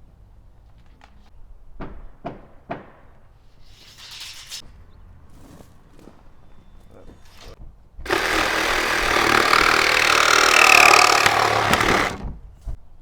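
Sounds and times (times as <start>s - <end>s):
power saw cutting: 8.1s - 12.3s.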